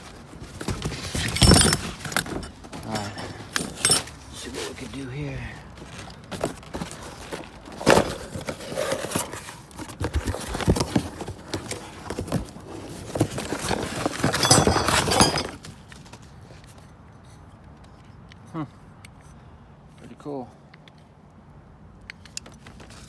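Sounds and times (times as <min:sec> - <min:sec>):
rattling clatter: 0:00.6 - 0:04.2, 0:10.3 - 0:16.1
metal hardware clanking: 0:01.1 - 0:04.2, 0:13.6 - 0:15.7.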